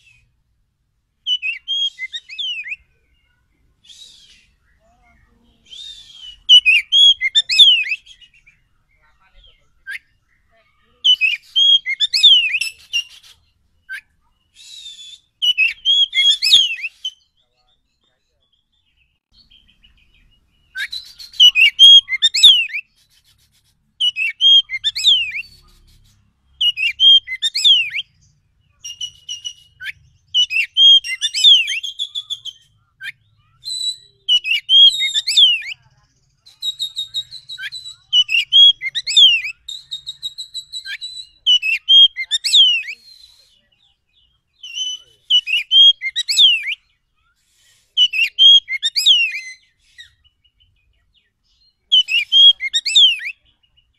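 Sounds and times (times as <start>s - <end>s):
bird singing whistled song: 0.0s - 0.4s, 1.2s - 23.1s, 24.0s - 53.9s.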